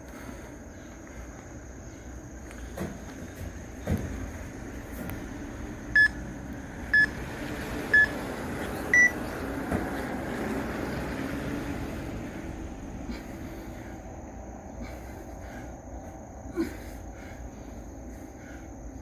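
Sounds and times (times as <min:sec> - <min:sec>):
interval timer beeps: 0:06.0 - 0:06.2, 0:06.9 - 0:07.2, 0:07.9 - 0:08.2, 0:08.9 - 0:09.2.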